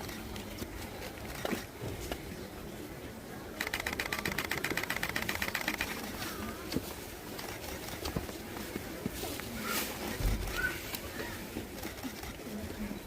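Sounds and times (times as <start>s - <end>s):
low crowd murmur: 0.0s - 13.0s
camera shutters clicking: 3.6s - 6.1s.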